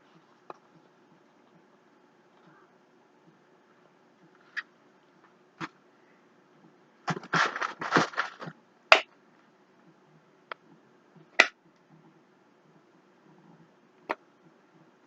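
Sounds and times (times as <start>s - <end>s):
packaging crinkling: 7.1s - 8.6s.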